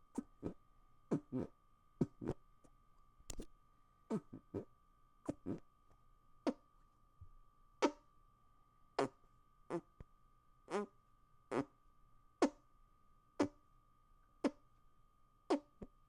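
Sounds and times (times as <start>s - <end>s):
faint steady high hum: 0.0s - 16.0s
hand farts: 11.5s - 11.7s.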